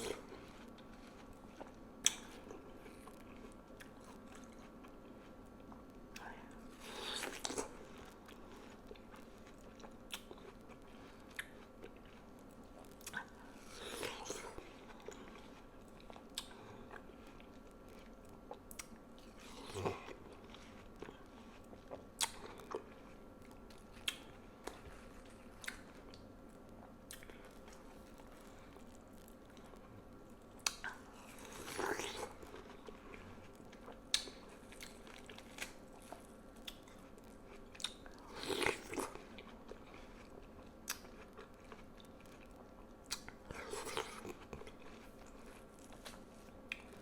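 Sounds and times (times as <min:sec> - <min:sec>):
wet biting and chewing: 0:43.1 - 0:47.0.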